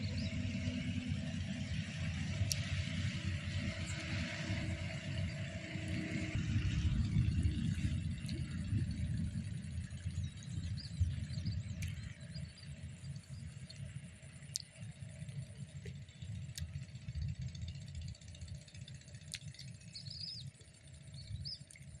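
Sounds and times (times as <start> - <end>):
low uneven rumble: 0.0 - 22.0
faint bird chirps: 19.2 - 22.0.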